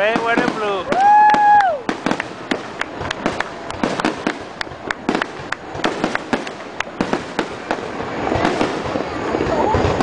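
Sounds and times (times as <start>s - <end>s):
fireworks crackling rumble: 0.0s - 10.0s
fireworks cracks and bangs: 0.0s - 10.0s.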